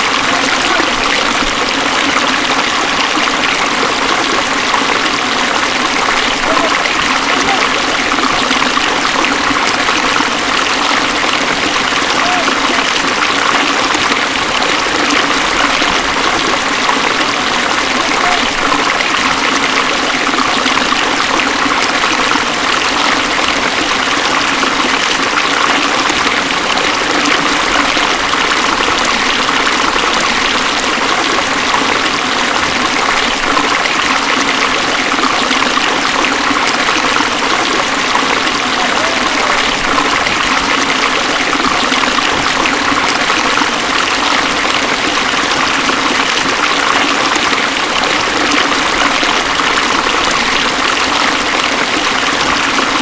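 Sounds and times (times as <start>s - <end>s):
river rushing: 0.0s - 53.0s.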